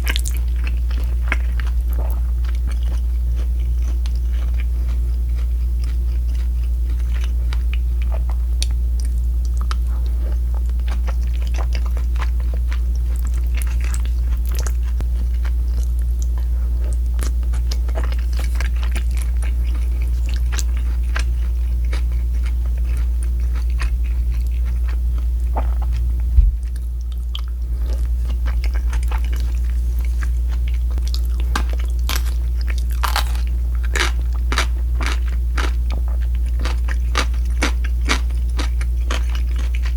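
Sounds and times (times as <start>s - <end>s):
chewing and crunching: 0.0s - 39.9s
steady low hum: 0.0s - 39.9s
sharp thump: 26.4s - 26.6s.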